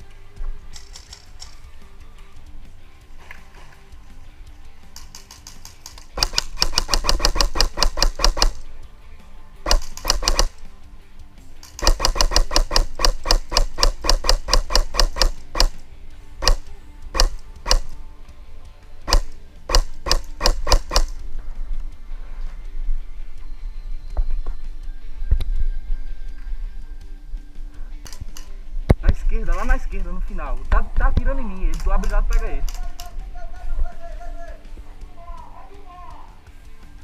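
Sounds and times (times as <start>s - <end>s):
airsoft gun firing clicks: 5.0s - 8.7s, 9.7s - 10.7s, 11.6s - 15.8s, 16.4s - 18.0s, 19.1s - 21.2s, 28.0s - 29.0s.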